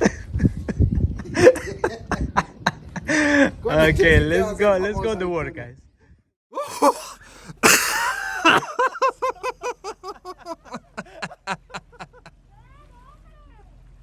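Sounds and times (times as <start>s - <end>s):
person laughing: 0.0s - 3.6s, 6.6s - 12.3s.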